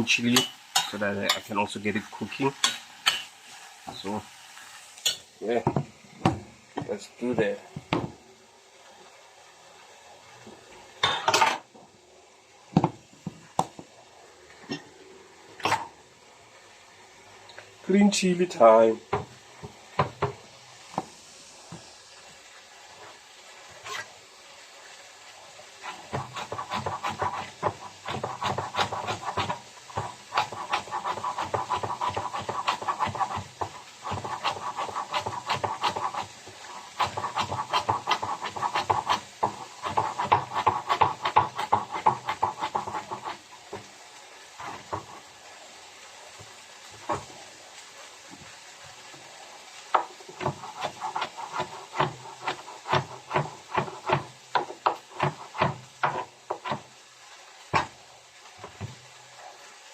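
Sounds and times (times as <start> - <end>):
knife chopping on cutting board: 25.9 - 36.2, 36.9 - 43.4, 50.0 - 56.8.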